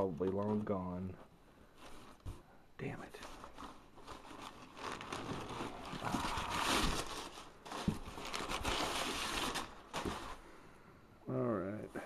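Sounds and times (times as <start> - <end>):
cardboard and packing material rustling: 1.7 - 2.5, 3.1 - 10.5.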